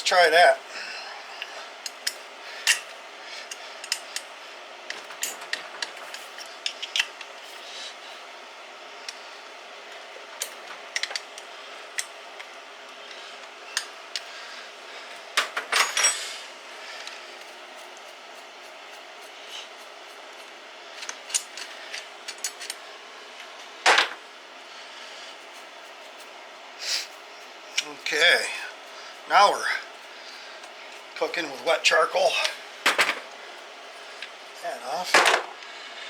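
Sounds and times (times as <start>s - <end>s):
tools and metal parts clinking: 1.4s - 4.3s, 4.9s - 7.3s, 10.4s - 12.2s, 15.4s - 16.4s, 21.0s - 22.8s, 32.3s - 33.4s, 35.1s - 35.5s.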